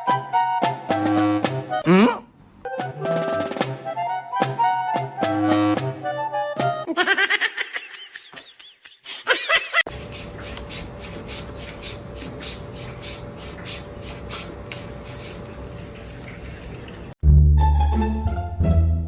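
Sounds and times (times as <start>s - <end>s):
high-pitched laughter: 6.9s - 9.9s
steady hum with faint tone: 9.9s - 16.9s.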